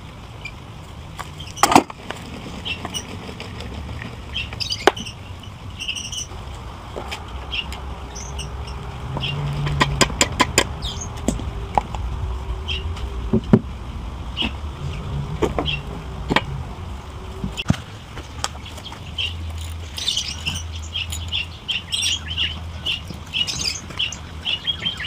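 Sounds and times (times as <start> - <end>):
low rumble: 0.9 - 20.0
metal parts and tools clinking: 19.2 - 21.5.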